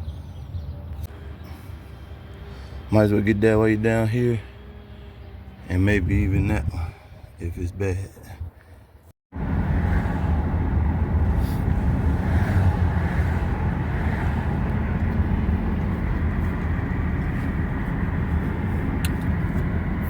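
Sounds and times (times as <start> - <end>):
car engine low hum: 9.3 - 20.0.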